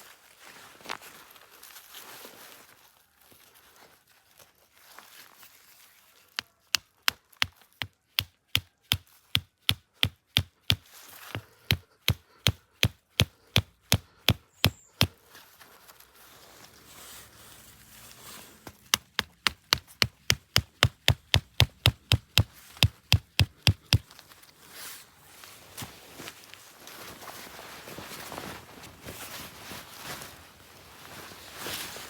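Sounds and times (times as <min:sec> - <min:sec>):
sharp chopping strokes: 0:07.4 - 0:15.2, 0:18.7 - 0:24.1.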